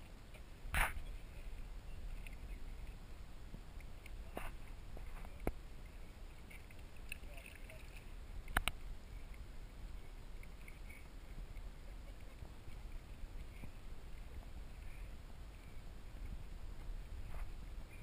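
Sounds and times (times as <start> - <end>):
low steady rumble: 0.0 - 18.0
water sloshing and splashing: 3.6 - 9.4.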